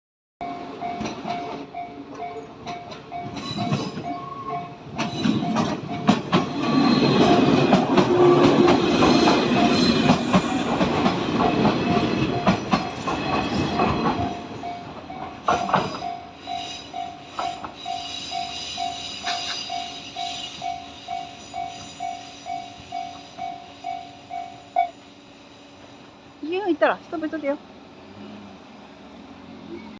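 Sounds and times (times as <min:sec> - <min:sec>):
train wheels clacking: 0:00.4 - 0:27.6
electric train passing: 0:00.4 - 0:29.9
level-crossing alarm ringing: 0:11.3 - 0:25.7.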